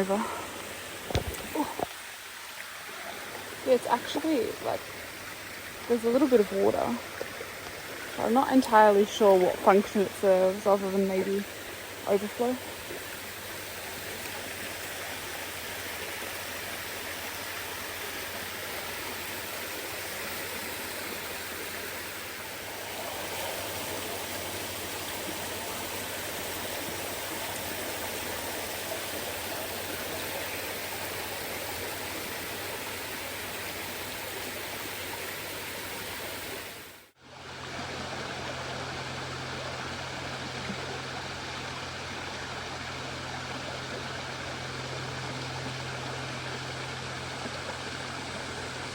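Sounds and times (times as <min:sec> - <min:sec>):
water rushing down waterfall: 0:00.0 - 0:48.9.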